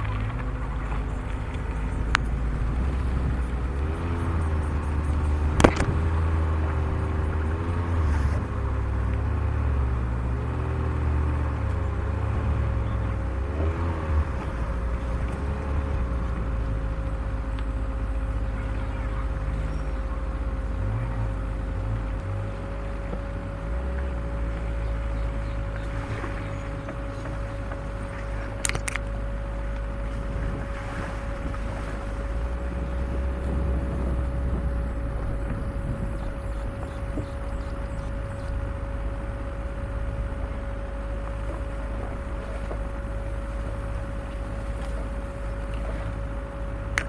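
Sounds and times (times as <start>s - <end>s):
vehicle engine and tyres rumbling: 0.0s - 47.0s
sharp click: 5.6s - 6.0s, 28.6s - 29.1s.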